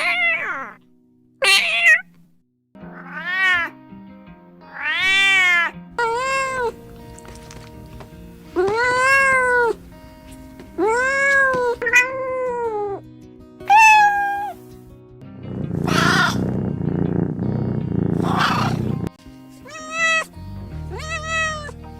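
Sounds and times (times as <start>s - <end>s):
cats meowing: 0.0s - 0.8s, 1.4s - 2.1s, 2.9s - 3.8s, 4.7s - 6.8s, 8.6s - 9.8s, 10.8s - 13.0s, 13.7s - 14.6s, 15.8s - 16.6s, 18.1s - 19.0s, 19.6s - 20.3s, 20.9s - 21.7s
background music: 2.8s - 21.9s.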